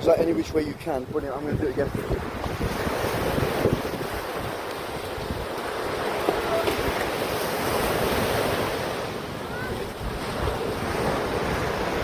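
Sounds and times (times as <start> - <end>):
ocean waves on shore: 0.0 - 12.0
wind buffeting microphone: 0.0 - 12.0.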